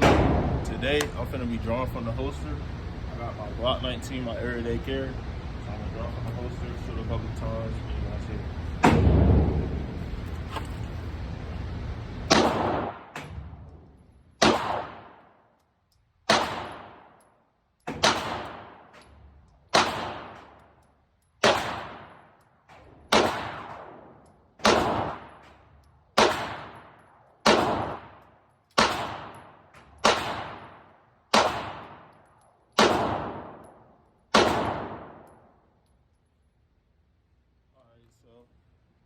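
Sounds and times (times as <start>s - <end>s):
pistol shots echoing: 0.0s - 1.2s, 12.3s - 13.5s, 14.4s - 15.4s, 16.3s - 17.2s, 17.9s - 19.0s, 19.7s - 20.6s, 21.4s - 22.4s, 23.1s - 25.4s, 26.1s - 28.2s, 28.8s - 35.6s.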